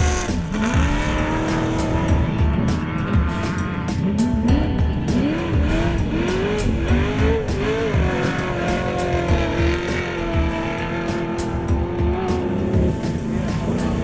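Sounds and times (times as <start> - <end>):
background music with steady beat: 0.0 - 14.0
race vehicle engine revving: 0.0 - 14.0.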